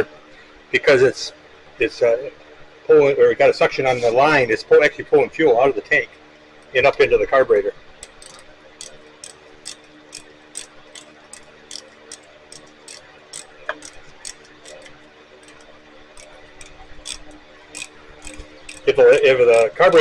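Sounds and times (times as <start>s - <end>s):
faint steady hum: 0.0s - 20.0s
primer bulb clicking: 8.0s - 19.3s.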